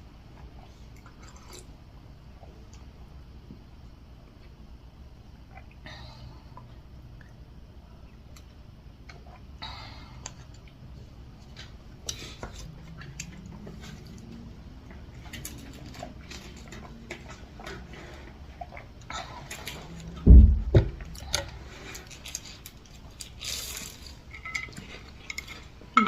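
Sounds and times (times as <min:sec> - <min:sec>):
soft chewing: 0:06.5 - 0:20.2, 0:21.0 - 0:26.0.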